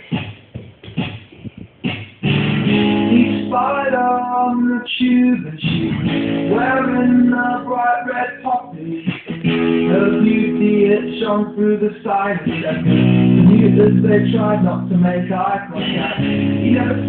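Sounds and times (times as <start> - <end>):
guitar music with sliding notes: 1.8 - 4.7, 5.4 - 17.0.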